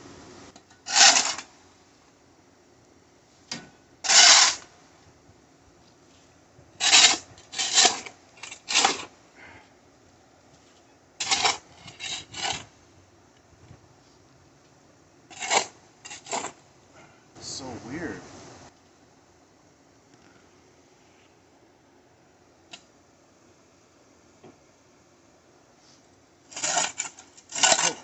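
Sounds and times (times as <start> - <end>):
shovel scraping concrete: 0.8 - 1.5, 4.0 - 4.7, 6.8 - 9.1, 11.2 - 12.7, 15.3 - 16.6, 26.5 - 28.0.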